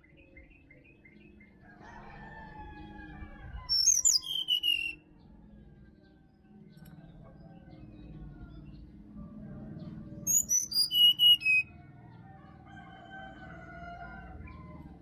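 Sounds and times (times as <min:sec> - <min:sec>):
faint drawn-out bird call: 0:03.6 - 0:05.0, 0:10.3 - 0:11.6
bird singing whistled notes: 0:03.7 - 0:05.0, 0:10.3 - 0:11.7.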